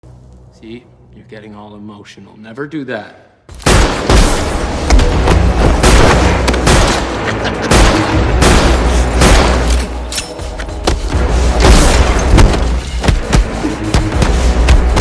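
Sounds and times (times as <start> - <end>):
background music: 0.0 - 15.0
gunfire bursts: 3.6 - 9.8.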